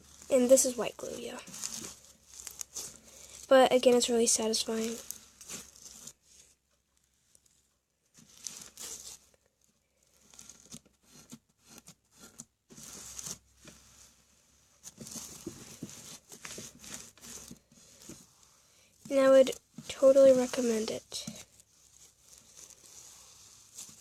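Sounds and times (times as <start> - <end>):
slime crackling and tearing: 0.0 - 6.3, 8.2 - 9.3, 10.0 - 11.2.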